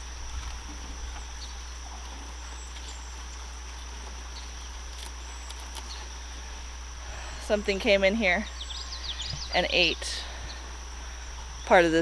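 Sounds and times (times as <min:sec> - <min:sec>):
constant low hum: 0:00.0 - 0:12.0
high-pitched insect drone: 0:00.0 - 0:12.0.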